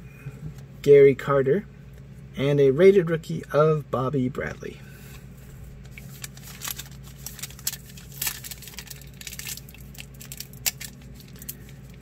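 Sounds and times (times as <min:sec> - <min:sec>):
steady low hum: 0:00.0 - 0:12.0
foil wrapper crinkling: 0:05.8 - 0:12.0.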